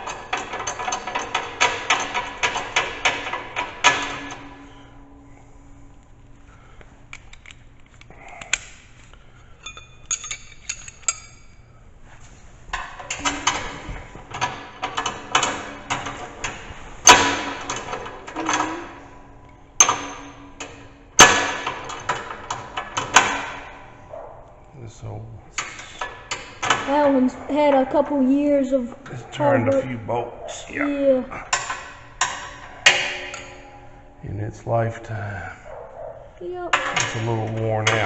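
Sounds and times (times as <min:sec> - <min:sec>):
metal parts clinking and knocking: 0:00.0 - 0:04.9, 0:07.1 - 0:11.6, 0:12.8 - 0:19.0, 0:36.7 - 0:38.0
loud metal bangs: 0:12.9 - 0:24.1, 0:31.4 - 0:34.2.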